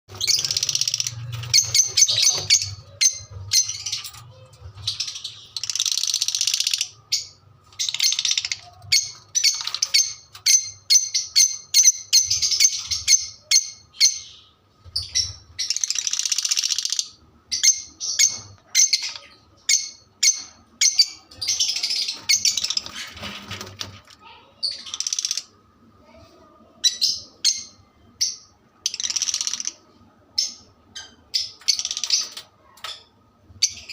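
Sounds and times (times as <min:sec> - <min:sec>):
parrot chirping and chattering: 0:00.1 - 0:23.6, 0:24.2 - 0:33.9.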